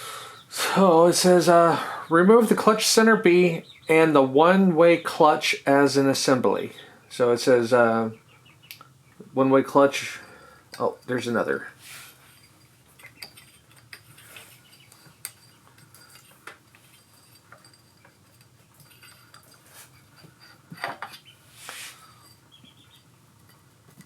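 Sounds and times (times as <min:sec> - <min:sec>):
metal scrape: 0:11.8 - 0:20.9, 0:21.5 - 0:22.4.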